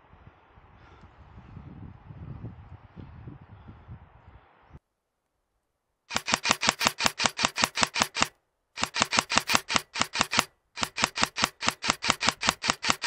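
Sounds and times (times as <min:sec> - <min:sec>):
airsoft gun automatic bursts: 0:06.1 - 0:13.0.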